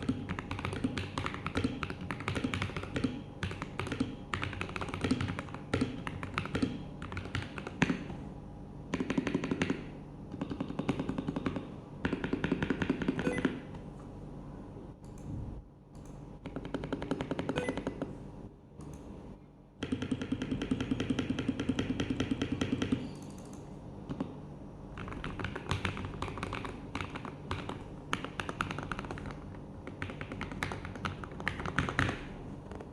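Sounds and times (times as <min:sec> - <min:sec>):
mechanical keyboard keys clacking: 0:25.0 - 0:32.2.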